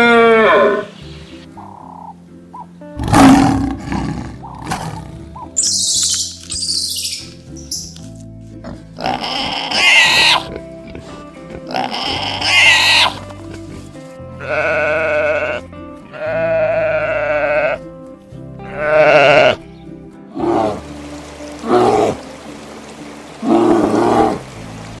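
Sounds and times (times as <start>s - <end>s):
background music: 0.0s - 25.0s
livestock bleating: 9.0s - 13.4s, 14.2s - 18.0s, 18.6s - 19.8s.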